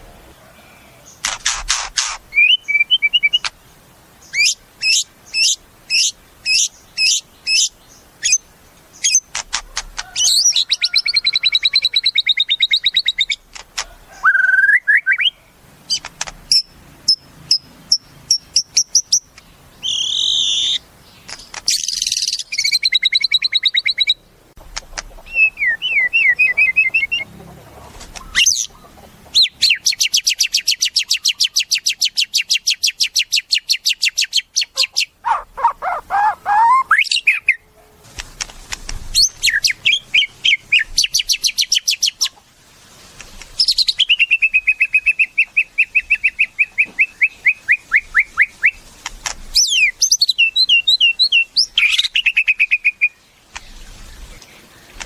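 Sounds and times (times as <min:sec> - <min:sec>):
bird singing whistled phrases: 0:02.3 - 0:03.5, 0:14.2 - 0:15.4, 0:19.8 - 0:20.8, 0:25.3 - 0:27.3, 0:34.7 - 0:37.6, 0:43.6 - 0:48.8, 0:49.6 - 0:53.2
fast rattling bird trill: 0:29.4 - 0:37.6.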